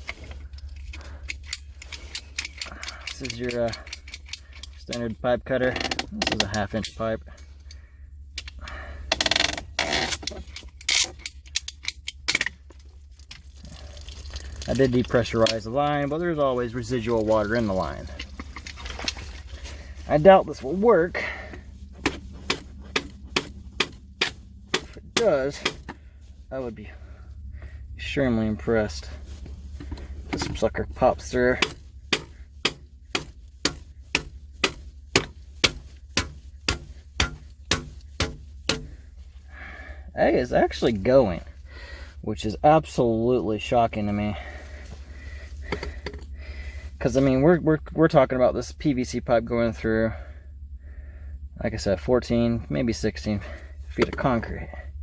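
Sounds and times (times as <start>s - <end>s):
hammer striking plastic pipe: 22.0s - 26.0s, 31.6s - 39.0s.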